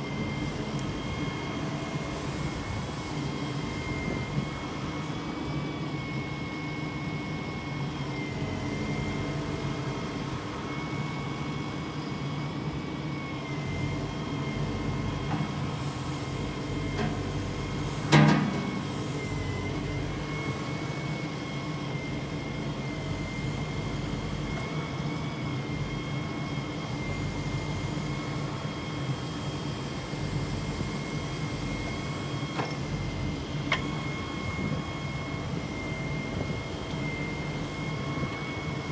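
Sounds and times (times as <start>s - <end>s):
excavator engine hum: 0.0s - 38.9s
loud clunk: 18.1s - 18.9s.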